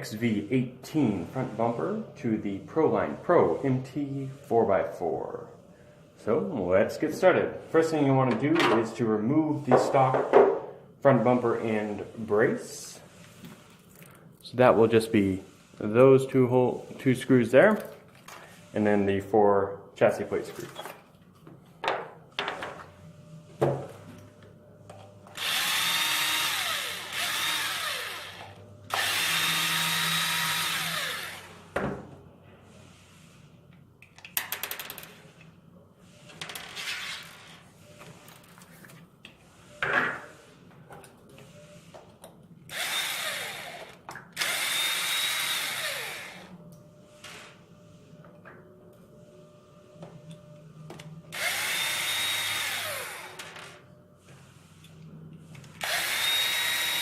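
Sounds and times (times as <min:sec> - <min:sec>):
electric driver motor whine: 0:25.4 - 0:31.5, 0:42.7 - 0:46.5.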